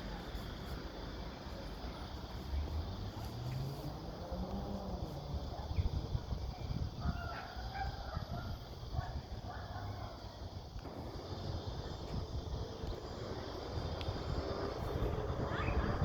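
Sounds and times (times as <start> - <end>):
steady low rumble: 10.5 - 16.0.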